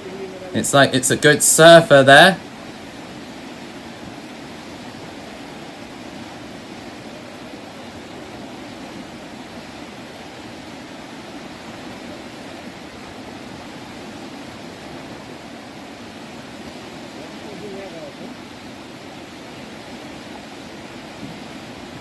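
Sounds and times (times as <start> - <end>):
fast-flowing water rushing: 0.0 - 3.8.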